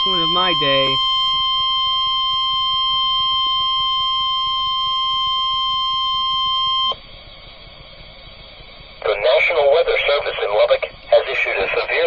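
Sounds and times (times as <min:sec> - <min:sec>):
long high electronic tone: 0:00.0 - 0:07.0.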